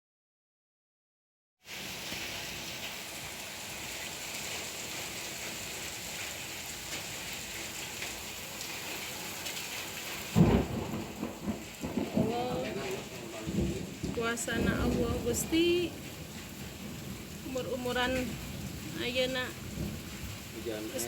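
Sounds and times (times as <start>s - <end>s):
heavy rain and hail: 1.7s - 21.0s
loud low thunder crack: 10.4s - 15.5s.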